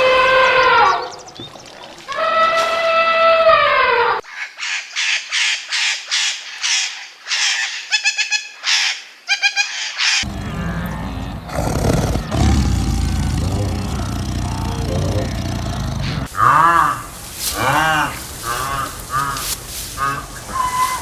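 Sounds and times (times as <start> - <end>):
bird harsh raspy calls: 4.3 - 16.5
falling animal call: 10.2 - 16.3
low rumbling noise: 10.3 - 16.3.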